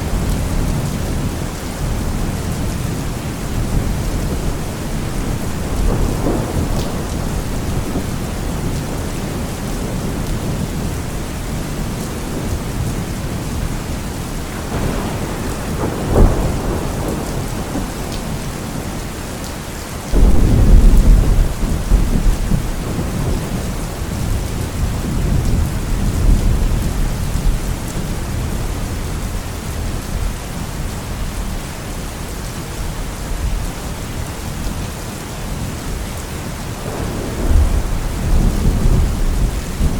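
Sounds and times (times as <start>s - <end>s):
loud thunderclap: 0.0s - 11.0s, 14.5s - 19.1s, 20.1s - 28.6s, 36.8s - 39.9s
thunder rumbling: 0.0s - 31.6s, 35.5s - 39.9s
steady rain: 0.0s - 39.9s.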